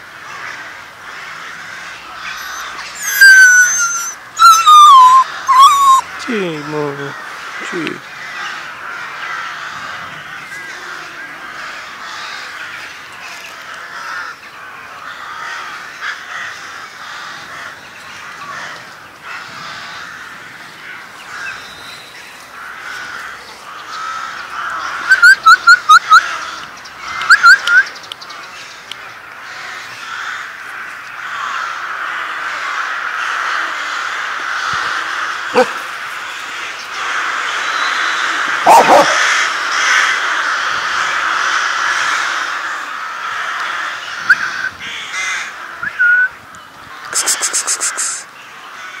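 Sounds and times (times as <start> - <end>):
short sharp animal calls: 2.2 - 6.4, 35.5 - 35.9, 47.1 - 48.3.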